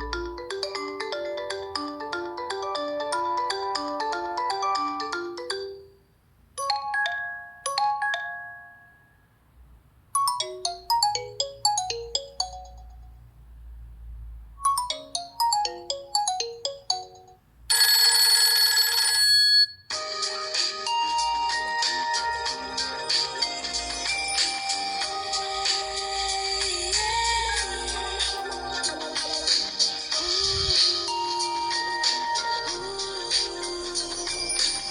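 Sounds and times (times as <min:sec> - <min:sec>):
phone ringtone melodies: 0:00.0 - 0:09.4, 0:10.1 - 0:13.3, 0:14.6 - 0:34.9.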